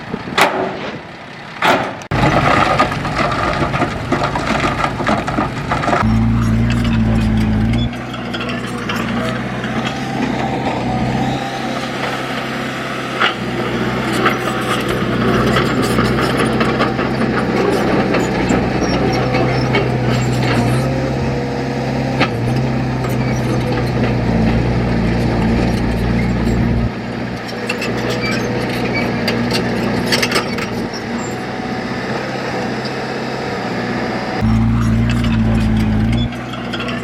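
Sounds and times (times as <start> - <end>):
heavy diesel engine running: 0.0 - 37.0
metal clanks: 0.3 - 10.0, 34.4 - 37.0
scraping: 0.4 - 11.0, 34.4 - 37.0.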